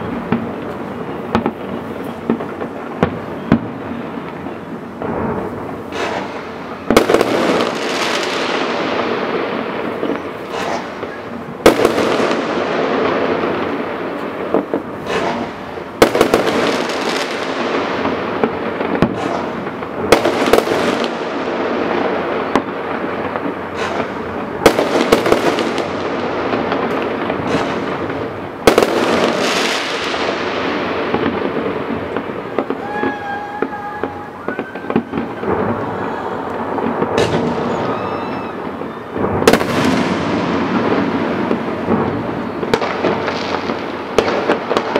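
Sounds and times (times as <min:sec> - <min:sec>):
firework pops and crackles: 0:00.0 - 0:44.9
firework shell bursts: 0:05.9 - 0:08.2, 0:10.4 - 0:12.4, 0:14.2 - 0:15.7, 0:19.0 - 0:21.0, 0:23.6 - 0:25.4, 0:26.9 - 0:28.3.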